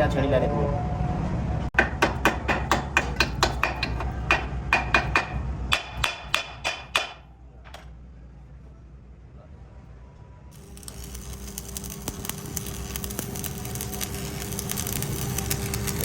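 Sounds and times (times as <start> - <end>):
hammer striking steel: 1.8 - 7.9.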